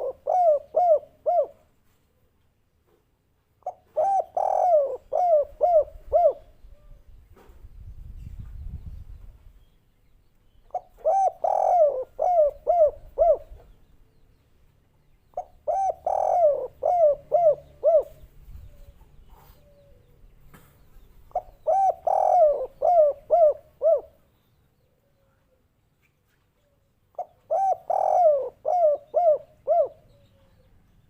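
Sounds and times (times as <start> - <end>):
dove cooing: 0.0 - 1.7, 3.6 - 7.0, 10.7 - 13.8, 15.3 - 20.2, 21.3 - 24.2, 27.1 - 30.7.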